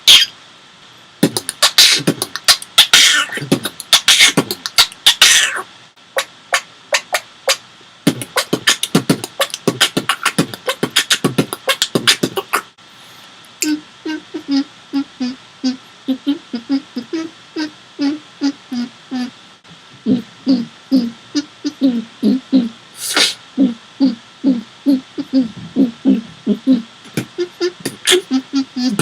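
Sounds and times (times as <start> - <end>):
beatboxing clicks and snare hits: 1.2 - 5.4, 6.1 - 12.8, 27.0 - 29.0.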